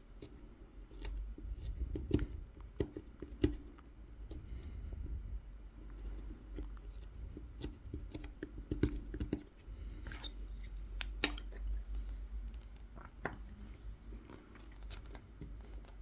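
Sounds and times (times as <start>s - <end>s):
knife scratching wood: 0.1s - 4.4s, 6.0s - 11.7s.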